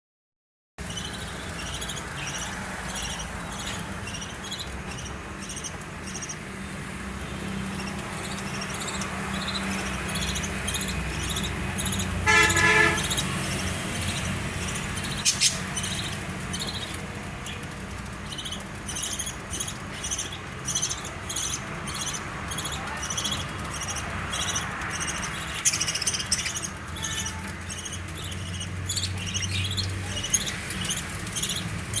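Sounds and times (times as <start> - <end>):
budgerigars chirping and chattering: 0.8 - 32.0
loud honk: 12.2 - 13.3.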